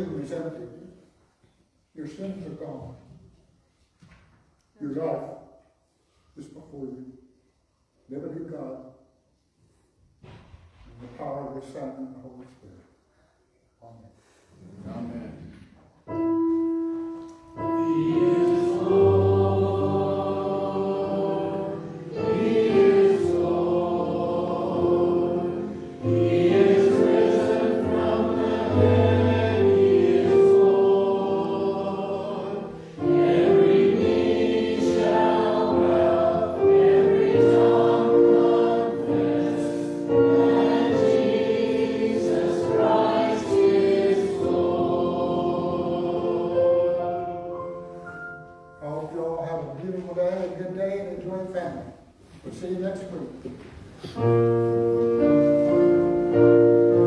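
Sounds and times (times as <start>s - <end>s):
choir singing with accompaniment: 16.6s - 48.8s, 54.1s - 57.0s.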